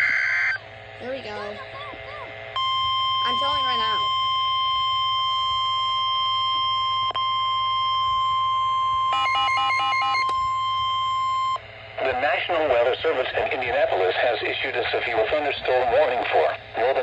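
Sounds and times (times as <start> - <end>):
steady piercing alarm tone: 0.0 - 0.7, 2.6 - 11.6
short beeps: 2.6 - 11.6.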